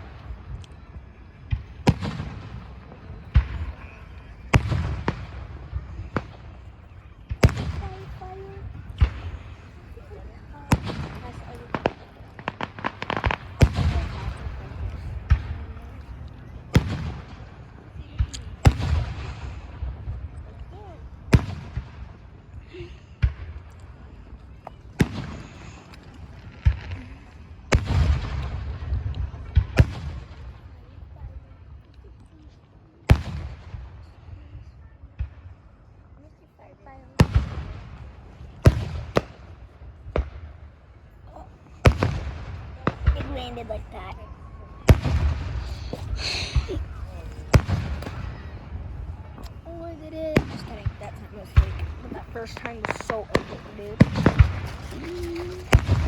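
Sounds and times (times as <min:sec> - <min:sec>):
fireworks bursting: 0:01.4 - 0:22.6, 0:37.2 - 0:56.0
rumbling crackle: 0:37.4 - 0:56.0.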